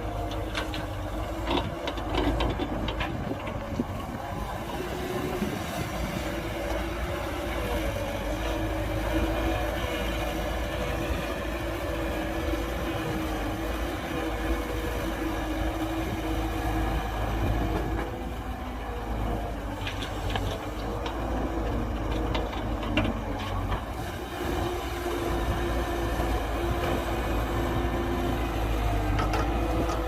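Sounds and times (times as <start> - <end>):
heavy diesel machinery rumbling: 0.0 - 30.0.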